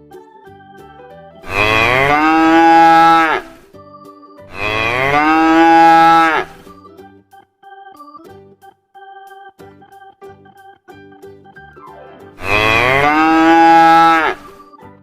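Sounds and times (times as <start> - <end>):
cow mooing: 1.5 - 3.6, 4.5 - 6.7, 12.4 - 14.6.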